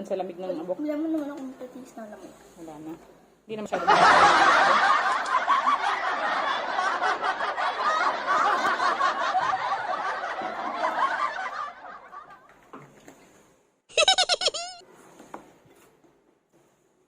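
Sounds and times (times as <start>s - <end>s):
loud laughter: 3.8s - 12.6s, 13.9s - 14.8s.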